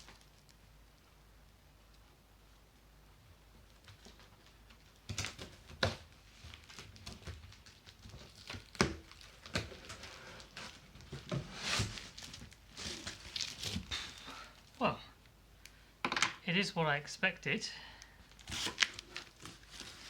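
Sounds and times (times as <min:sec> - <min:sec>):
packing crinkling rustles: 0:00.0 - 0:00.6, 0:03.6 - 0:14.8, 0:18.1 - 0:20.0
cardboard scraping: 0:09.2 - 0:14.2, 0:18.4 - 0:20.0.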